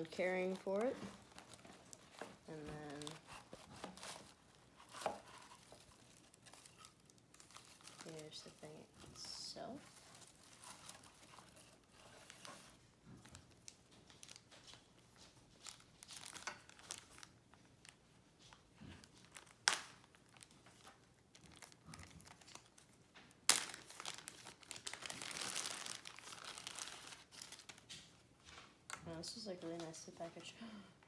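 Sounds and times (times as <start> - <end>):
packaging crinkling and rustling: 0.0 - 28.8
packaging tearing: 23.4 - 27.8.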